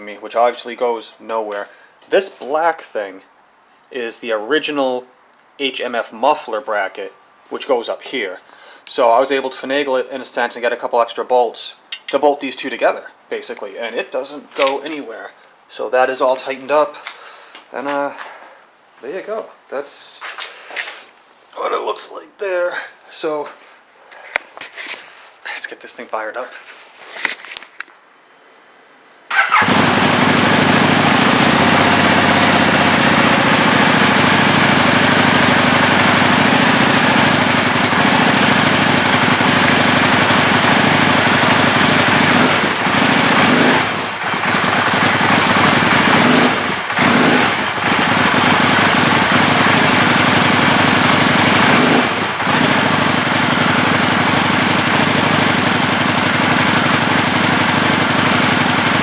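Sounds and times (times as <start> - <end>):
motorcycle engine running loud: 29.3 - 59.0.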